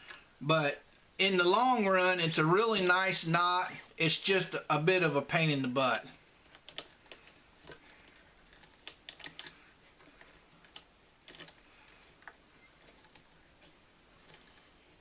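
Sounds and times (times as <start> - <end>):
hands working cord: 6.4 - 15.0.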